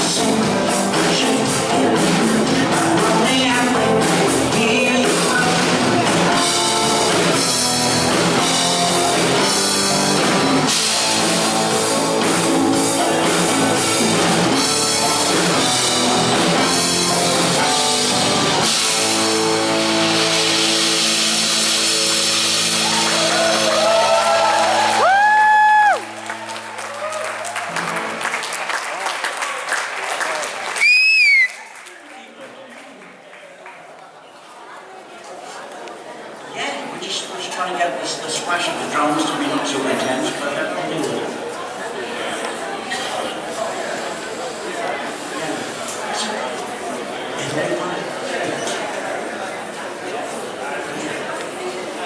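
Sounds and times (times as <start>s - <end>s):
male lead vocal: 0.0s - 7.0s
drum kit: 0.0s - 26.8s
guitar: 0.0s - 28.9s.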